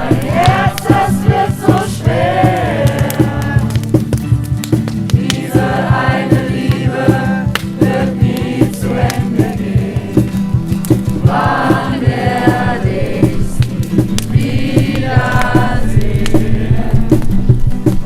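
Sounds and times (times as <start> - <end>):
group voices chanting: 0.0 - 3.7
music with a steady beat: 0.0 - 18.0.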